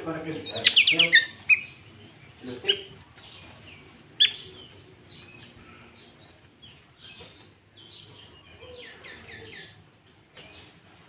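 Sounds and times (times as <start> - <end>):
bird chirping and whistling: 0.6 - 1.7.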